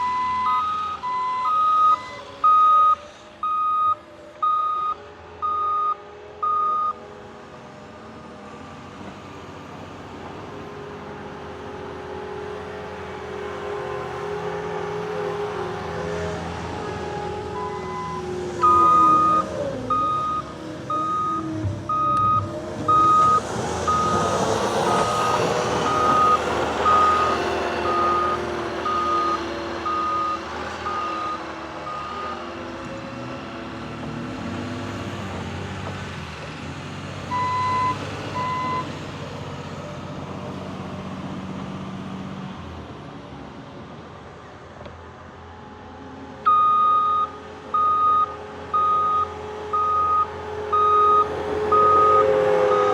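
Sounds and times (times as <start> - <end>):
backup alarm beeping: 0.0 - 7.0, 17.6 - 24.3, 24.9 - 32.3, 46.5 - 52.9
lower beeps: 0.0 - 7.0, 17.6 - 24.3, 24.9 - 32.4, 46.5 - 52.9
diesel engine under load: 0.0 - 52.9.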